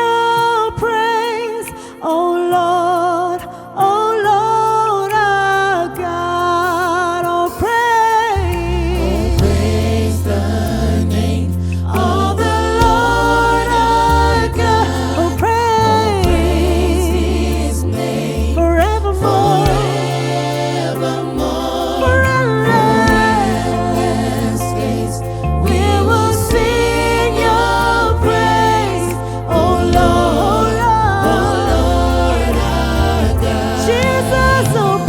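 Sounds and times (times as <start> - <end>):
gospel choir singing: 0.0 - 35.0
steady bass line: 8.4 - 35.0.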